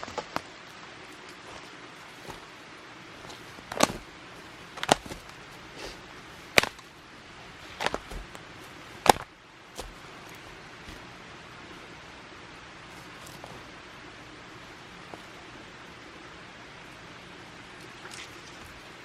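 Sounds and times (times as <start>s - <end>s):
knocks on dry wood: 4.8s - 5.3s, 9.0s - 10.0s.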